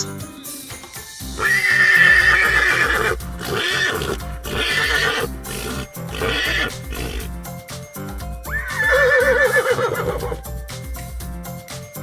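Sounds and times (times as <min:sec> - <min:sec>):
background music: 0:00.0 - 0:12.0
horse whinnying: 0:01.4 - 0:07.3, 0:08.5 - 0:10.4.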